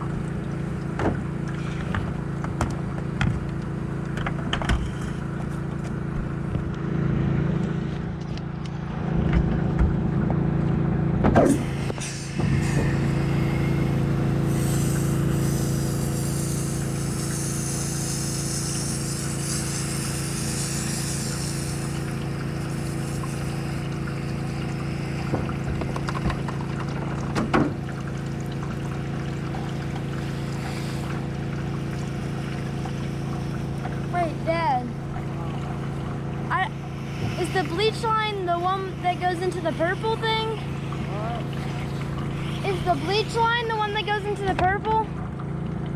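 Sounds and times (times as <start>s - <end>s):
pressure washer engine running: 0.0s - 45.6s
water spray hissing: 11.4s - 44.5s.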